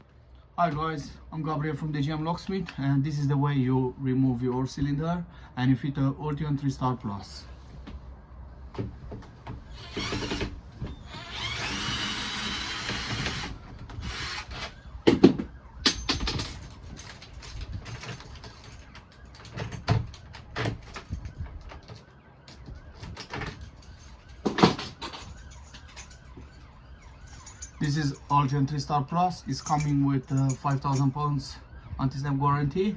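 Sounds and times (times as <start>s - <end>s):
cordless drill-driver whining: 9.7s - 14.8s
metal lock hardware clicking: 29.6s - 31.1s.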